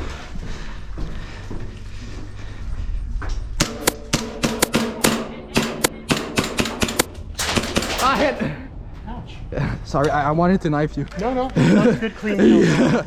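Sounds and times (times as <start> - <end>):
airsoft gun firing rapid shots: 3.6 - 8.2.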